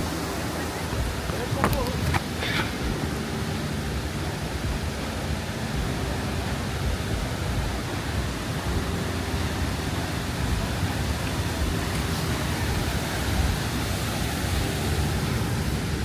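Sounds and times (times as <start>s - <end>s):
waterfall rushing: 0.0s - 16.0s.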